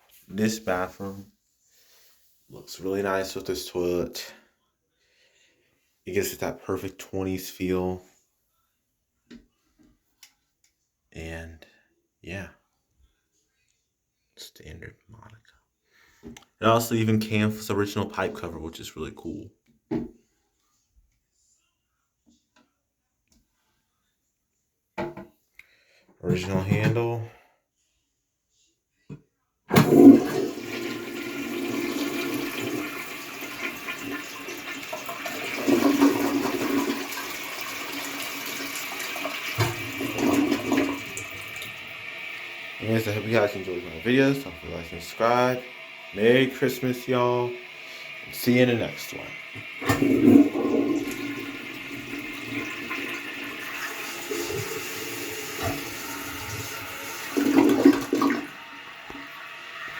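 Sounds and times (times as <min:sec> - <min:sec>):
toilet flushing: 0:02.6 - 0:04.4, 0:06.1 - 0:08.0, 0:29.7 - 0:59.9.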